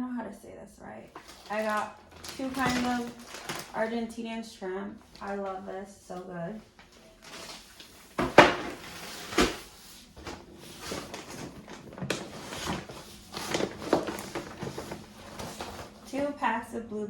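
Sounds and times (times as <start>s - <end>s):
packages rustling: 1.1s - 4.2s, 5.0s - 5.7s, 6.6s - 16.3s
items set down knocking: 6.8s - 16.0s.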